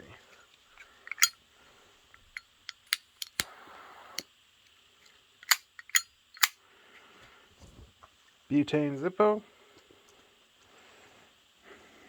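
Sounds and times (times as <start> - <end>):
sharp clicks and snaps: 2.2 - 4.3, 5.4 - 6.6.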